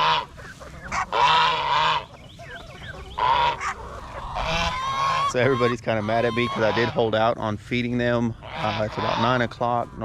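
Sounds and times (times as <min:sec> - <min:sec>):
goose honking: 0:00.0 - 0:07.4, 0:08.1 - 0:10.0.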